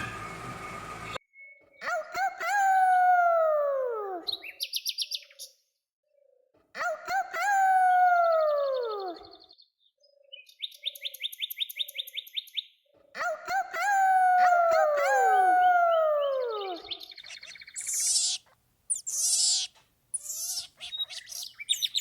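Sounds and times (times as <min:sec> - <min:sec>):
high-pitched chirping trill: 0:17.2 - 0:22.0.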